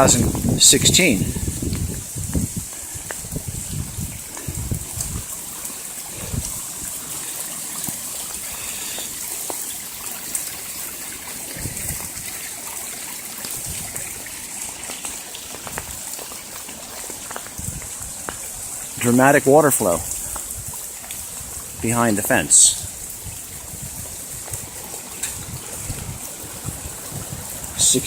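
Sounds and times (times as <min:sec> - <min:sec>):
rainwater runoff rushing: 0:00.0 - 0:28.0.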